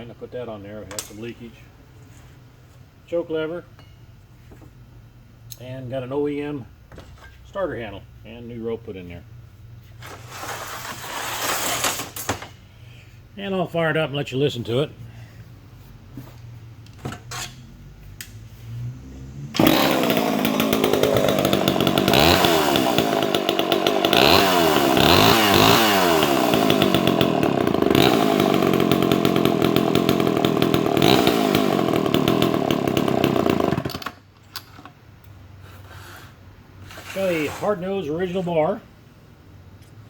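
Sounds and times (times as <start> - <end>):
chainsaw revving: 18.8 - 34.2.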